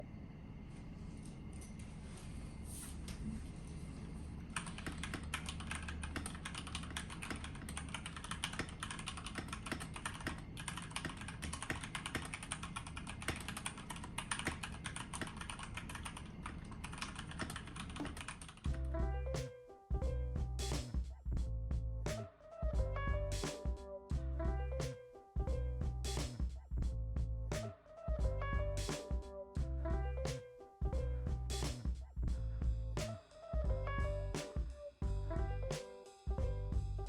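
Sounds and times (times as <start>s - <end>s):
mechanical keyboard typing: 4.6s - 18.6s
background music: 18.7s - 37.0s.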